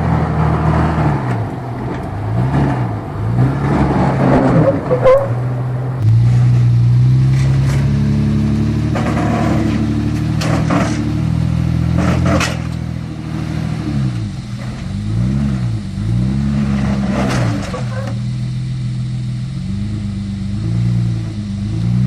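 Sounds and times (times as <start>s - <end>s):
engine revving under load: 0.0s - 22.0s
short clunks: 11.9s - 13.0s.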